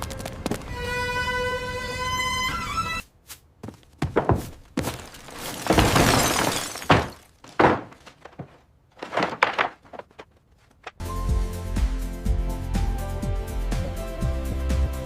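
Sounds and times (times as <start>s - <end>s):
sharp knocks and cracking hits: 3.6s - 11.0s
rough breaking noise: 4.0s - 11.0s.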